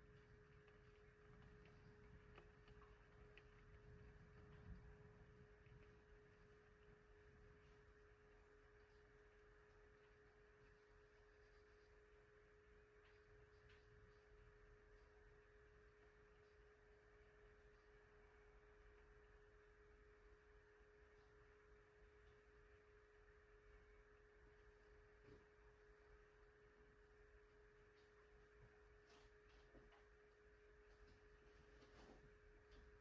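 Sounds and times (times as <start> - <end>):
tiny ticks: 0.0 - 23.3
faint steady tone: 0.0 - 33.0.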